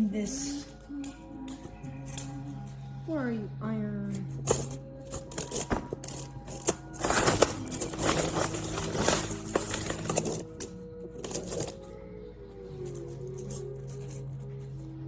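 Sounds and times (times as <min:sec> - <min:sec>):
plastic blocks clattering: 0:04.4 - 0:11.8.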